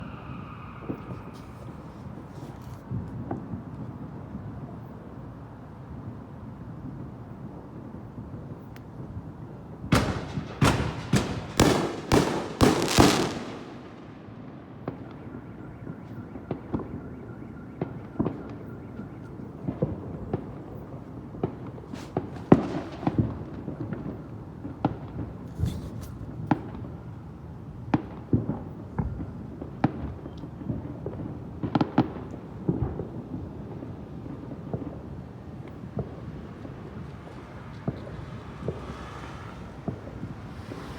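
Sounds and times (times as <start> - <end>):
fireworks exploding: 0.0 - 4.2, 7.6 - 27.2, 27.8 - 40.9.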